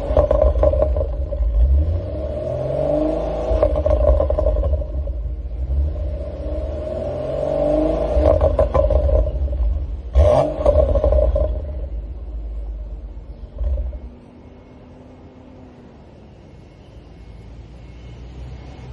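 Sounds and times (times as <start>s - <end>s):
exhaust pops and crackles: 0.0s - 2.0s, 3.5s - 5.6s, 8.1s - 12.4s, 13.3s - 14.1s
car exhaust revving: 0.0s - 14.3s.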